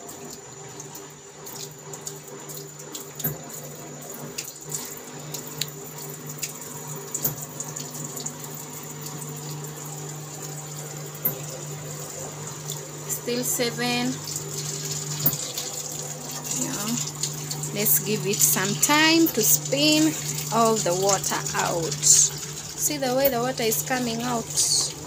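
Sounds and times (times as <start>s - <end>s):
washing machine motor hum: 0.0s - 25.0s
water rushing and draining: 0.0s - 25.0s.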